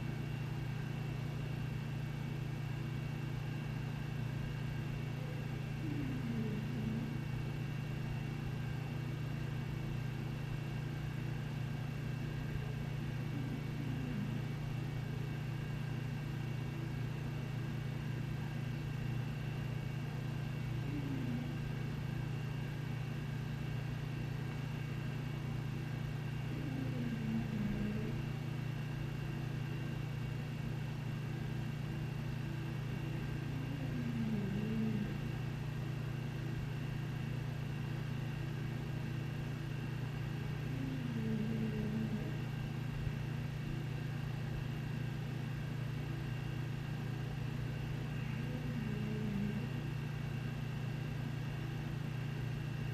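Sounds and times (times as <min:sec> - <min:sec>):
low household hum: 0:00.0 - 0:52.9
dog snoring: 0:33.4 - 0:35.3.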